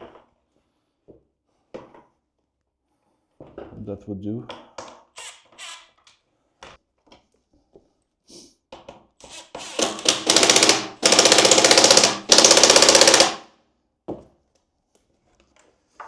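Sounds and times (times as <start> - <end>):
power driver ratcheting: 9.3 - 13.4.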